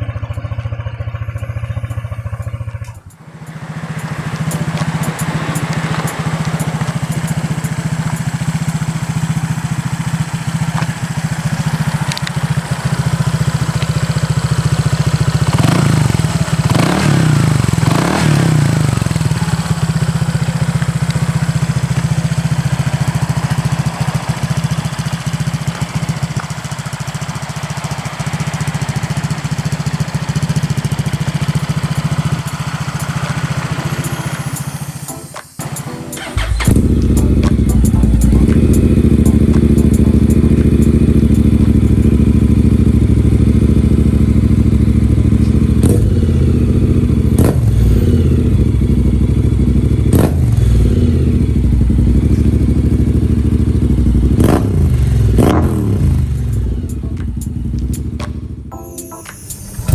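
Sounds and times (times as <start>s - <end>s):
scooter engine idling: 0.0s - 59.9s
throttle blips: 33.9s - 42.3s.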